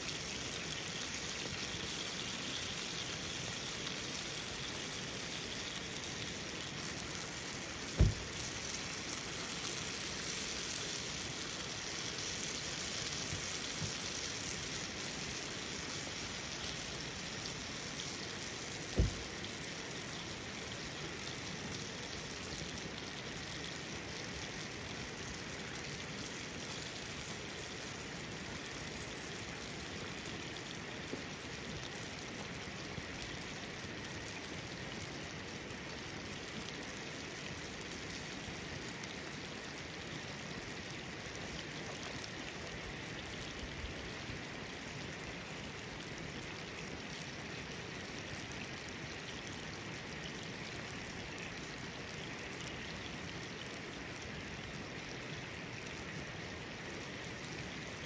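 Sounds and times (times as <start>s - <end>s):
steady hiss: 0.0s - 21.1s
dull thumps: 8.0s - 8.3s, 19.0s - 19.3s.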